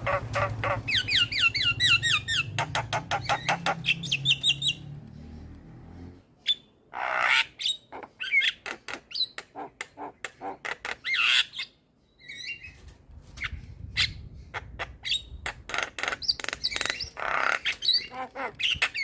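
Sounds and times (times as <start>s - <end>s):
bird squawking: 0.0s - 4.8s, 6.5s - 11.7s, 14.6s - 19.0s.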